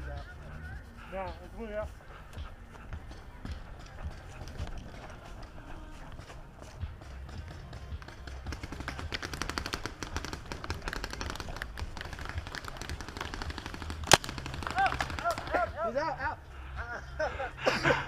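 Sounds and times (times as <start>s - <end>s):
paintball markers firing: 7.0s - 15.7s
loud crack: 9.6s - 15.5s.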